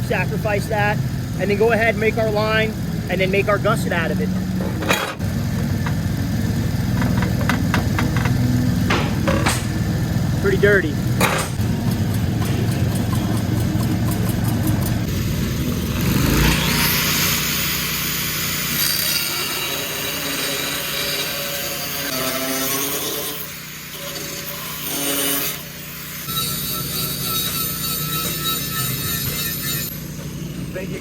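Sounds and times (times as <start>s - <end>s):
welding generator engine running: 0.0s - 20.9s, 29.2s - 31.0s.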